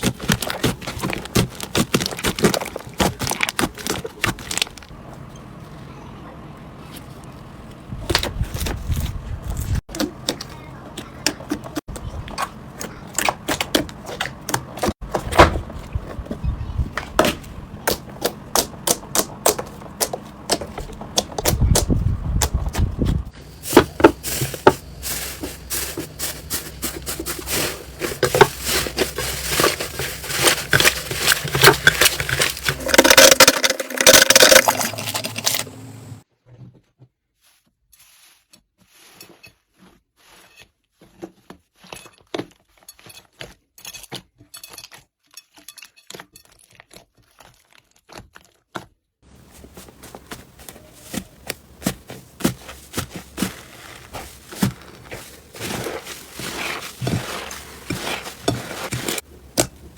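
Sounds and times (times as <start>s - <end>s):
crunchy slime crackling: 0.0s - 5.0s, 23.3s - 35.7s, 46.7s - 59.9s.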